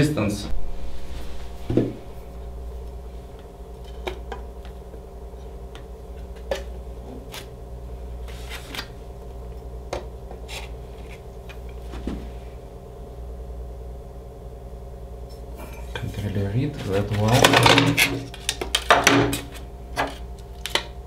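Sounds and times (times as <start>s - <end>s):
computer fans humming: 0.0s - 21.0s.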